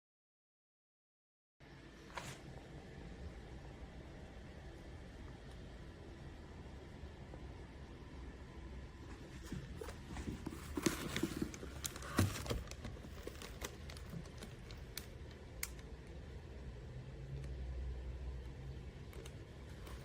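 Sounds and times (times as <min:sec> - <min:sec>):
low steady hum: 0:01.6 - 0:20.0
handling clicks and rustles: 0:09.2 - 0:16.1.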